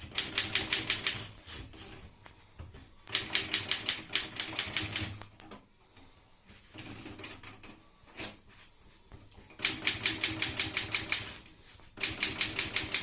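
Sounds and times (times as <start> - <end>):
typewriter keys striking: 0.0 - 1.3, 3.1 - 5.2, 9.6 - 11.4, 12.0 - 13.0.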